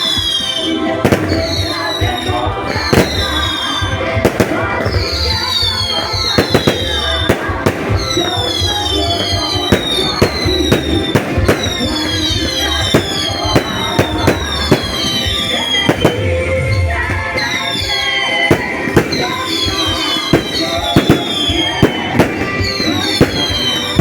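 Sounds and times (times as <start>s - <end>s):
fireworks bangs and pops: 0.0s - 24.0s
fireworks whistling: 0.0s - 24.0s
music playing: 0.0s - 24.0s.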